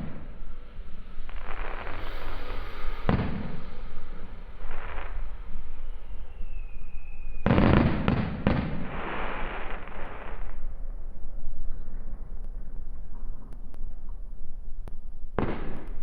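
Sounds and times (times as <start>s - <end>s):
firework bangs: 0.0s - 10.8s, 15.3s - 16.0s
firework crackling fizz: 0.0s - 10.8s
firework whistle: 0.0s - 11.2s.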